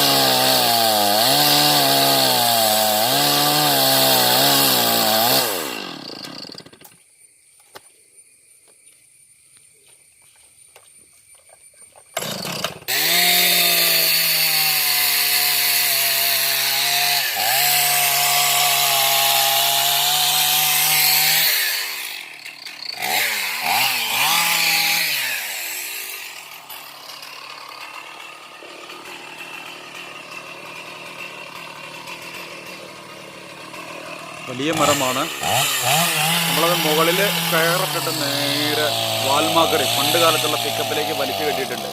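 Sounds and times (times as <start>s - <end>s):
chainsaw cutting wood: 0.0s - 7.0s, 12.2s - 41.9s.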